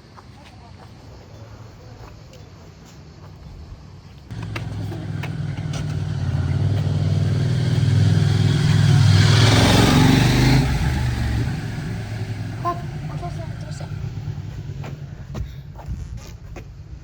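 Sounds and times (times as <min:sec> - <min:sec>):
vehicle engine passing by: 0:04.3 - 0:15.4.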